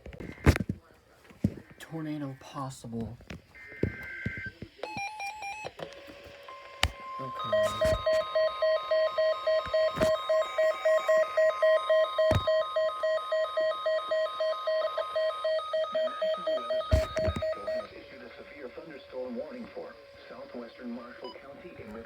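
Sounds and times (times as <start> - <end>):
steady warning alarm tone: 6.4 - 22.0.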